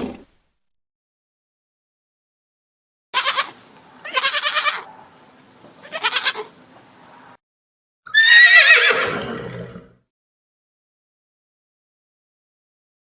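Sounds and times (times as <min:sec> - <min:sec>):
goat bleating: 0:03.2 - 0:05.0, 0:05.8 - 0:06.5.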